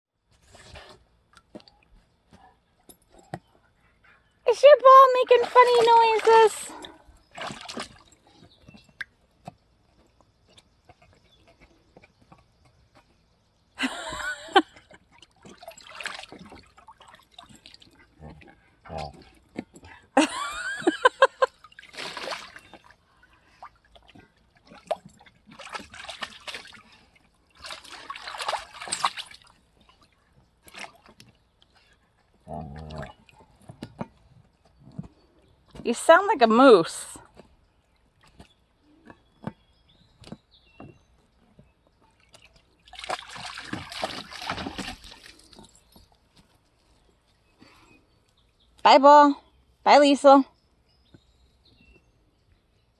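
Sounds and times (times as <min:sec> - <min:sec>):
water sloshing: 0:04.5 - 0:09.1, 0:14.1 - 0:32.4, 0:42.2 - 0:46.4.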